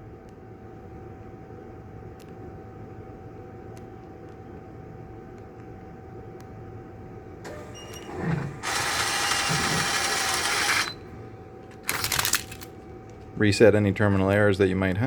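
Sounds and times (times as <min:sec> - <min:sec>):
label printer feed whirring: 0:07.4 - 0:11.3.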